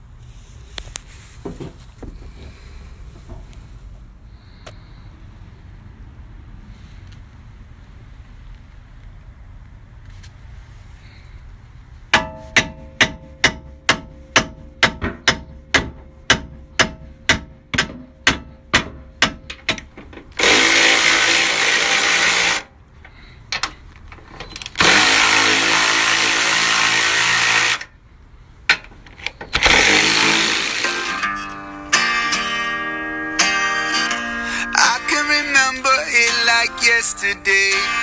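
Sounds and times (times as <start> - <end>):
hammer blows on steel: 12.1 - 19.5
impact wrench bursts: 12.2 - 23.8, 24.4 - 28.0, 29.3 - 32.0.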